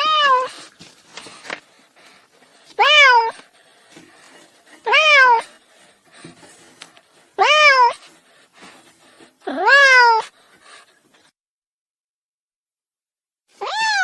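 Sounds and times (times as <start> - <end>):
cat meowing: 0.0 - 0.6, 2.8 - 3.4, 4.8 - 5.5, 7.4 - 8.0, 9.5 - 10.3, 13.6 - 14.0.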